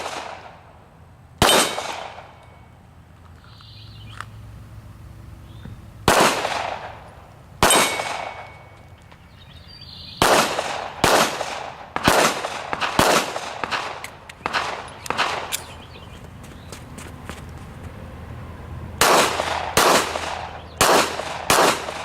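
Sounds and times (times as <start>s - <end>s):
pistol shots echoing: 0.0s - 0.6s, 1.4s - 2.6s, 6.0s - 8.8s, 10.1s - 15.8s, 19.0s - 22.0s.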